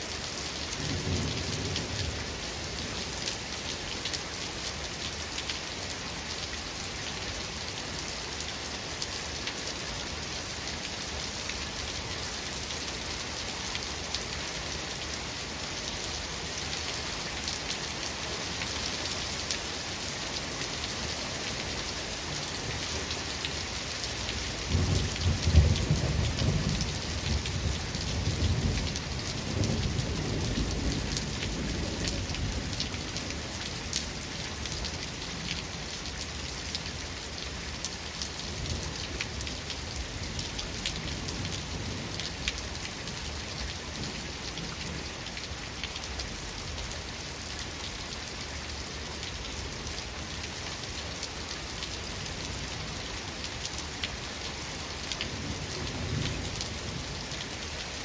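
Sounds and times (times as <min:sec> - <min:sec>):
raindrops ticking on a surface: 0:15.8 - 0:58.0.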